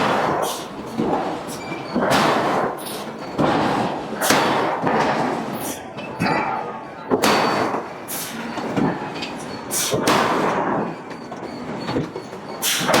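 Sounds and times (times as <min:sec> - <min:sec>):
forging hammer striking steel: 0:02.0 - 0:10.9, 0:12.7 - 0:13.0.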